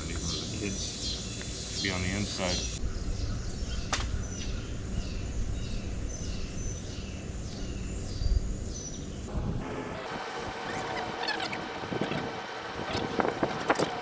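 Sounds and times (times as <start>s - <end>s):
low rumble: 9.3s - 13.8s
bird chirping: 10.0s - 14.0s.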